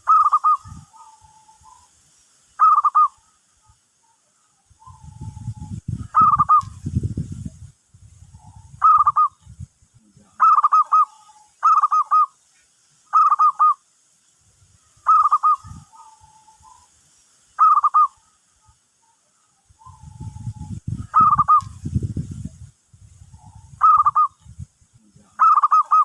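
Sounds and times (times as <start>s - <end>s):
dove cooing: 0.0s - 1.9s, 2.6s - 3.4s, 4.0s - 6.8s, 8.3s - 9.4s, 10.4s - 12.3s, 13.1s - 13.8s, 15.0s - 16.8s, 17.6s - 18.4s, 19.8s - 21.8s, 23.3s - 24.4s, 25.4s - 26.0s.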